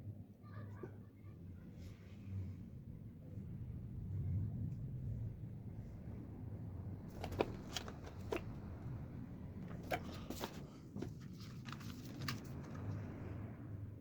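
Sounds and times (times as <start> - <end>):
light clicks and rustles: 7.1 - 9.0, 9.6 - 13.2.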